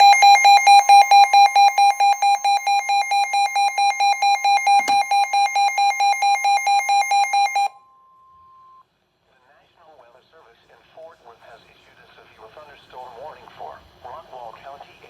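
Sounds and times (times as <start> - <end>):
rapid electronic alert beeping: 0.0 - 7.7
steady high tone: 0.0 - 7.9.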